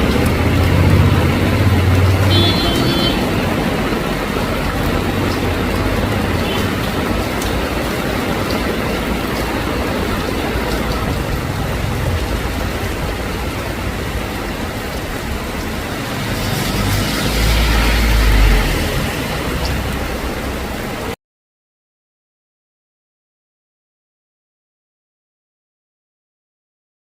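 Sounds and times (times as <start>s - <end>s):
vehicle passing: 0.0s - 21.1s
heavy rain: 0.0s - 21.2s
traffic engine rumble: 0.0s - 21.2s.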